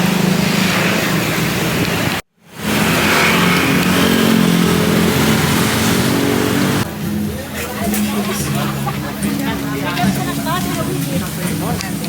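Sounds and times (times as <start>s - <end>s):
vehicle engine running: 0.0s - 12.0s.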